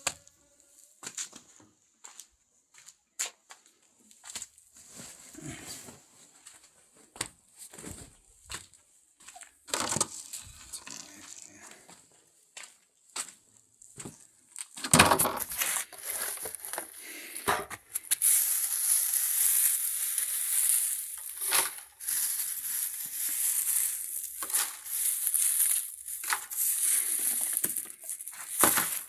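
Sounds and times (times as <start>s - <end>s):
dry material rustling: 15.4s - 29.0s.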